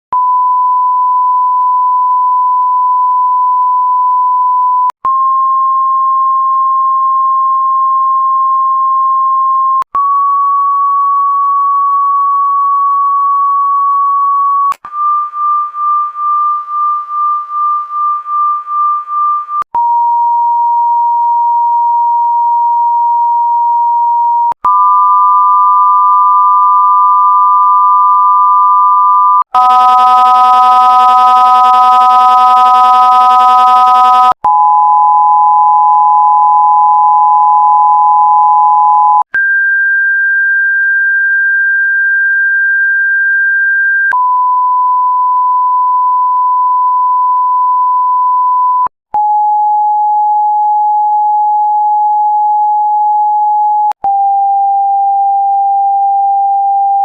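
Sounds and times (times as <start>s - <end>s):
test tone beep: 24.2s - 34.6s.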